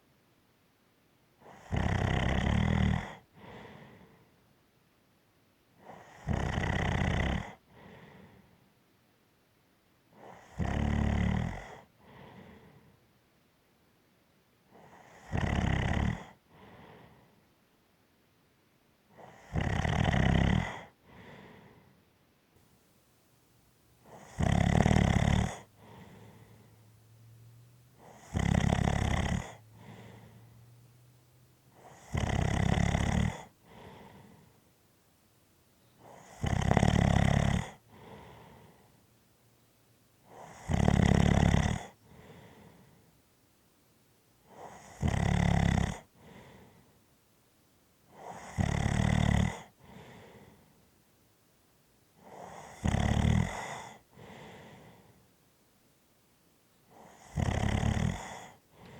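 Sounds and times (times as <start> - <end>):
loud snoring: 1.4 - 3.2, 5.9 - 7.6, 10.2 - 11.9, 14.8 - 16.4, 19.2 - 21.0, 24.0 - 31.0, 31.7 - 34.5, 36.0 - 38.7, 40.3 - 42.4, 44.5 - 46.4, 48.1 - 49.9, 52.2 - 54.5, 56.9 - 58.9
faint short breath: 3.4 - 4.4, 7.7 - 8.7, 12.0 - 13.1, 16.5 - 17.5, 21.0 - 22.0, 25.6 - 28.2, 29.5 - 31.2, 33.6 - 34.7, 37.9 - 39.1, 42.0 - 43.2, 46.2 - 47.0, 49.8 - 50.9, 53.8 - 55.2, 58.3 - 58.9.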